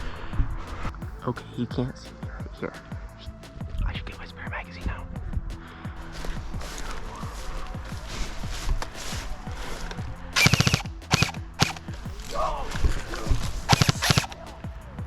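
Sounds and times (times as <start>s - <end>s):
airsoft gun full-auto bursts: 10.4s - 11.9s, 13.7s - 14.4s.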